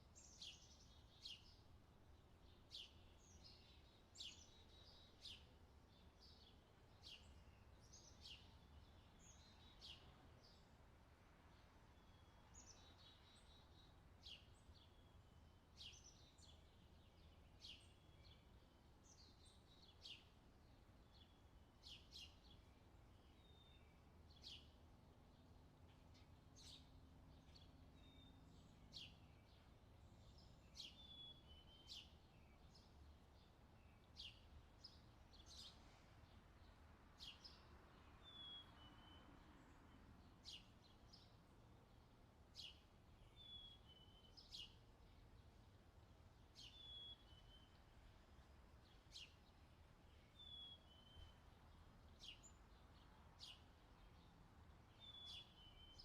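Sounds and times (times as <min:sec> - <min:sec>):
songbirds chirping: 0:00.0 - 0:56.0.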